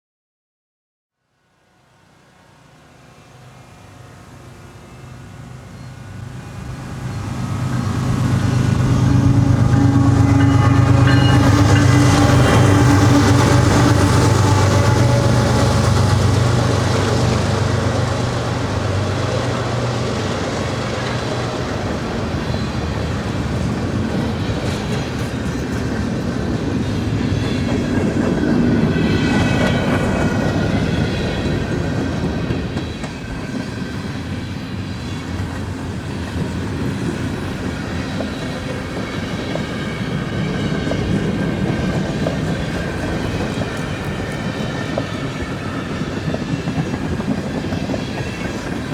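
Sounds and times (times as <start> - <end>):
diesel locomotive engine drone: 1.3 - 48.9
high wheel squeals: 3.3 - 27.6, 28.8 - 48.9.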